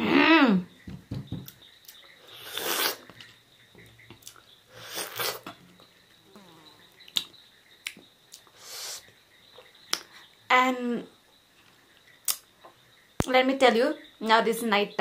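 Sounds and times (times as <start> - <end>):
wet lip smacks and clicks: 7.1 - 8.5, 9.9 - 10.1, 12.2 - 12.5
sharp breathy sniffs: 8.5 - 9.1.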